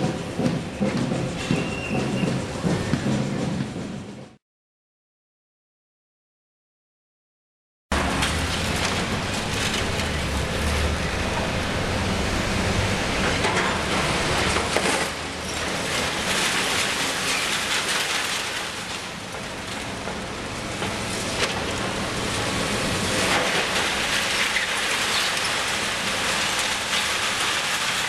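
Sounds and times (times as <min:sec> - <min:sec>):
diesel engine hum: 0:07.9 - 0:17.1, 0:17.7 - 0:27.9
concrete breaking and rubble falling: 0:14.4 - 0:19.8.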